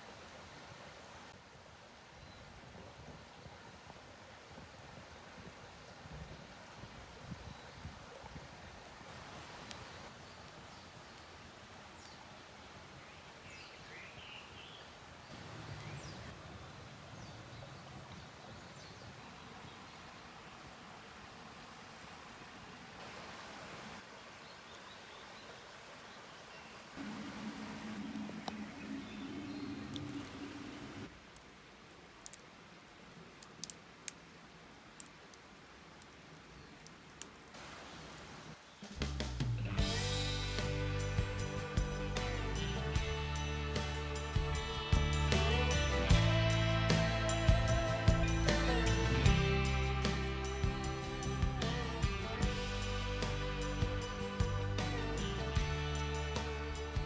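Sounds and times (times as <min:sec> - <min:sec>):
steady outdoor hiss: 0:00.0 - 0:57.0
fire crackling with pops: 0:31.2 - 0:40.0.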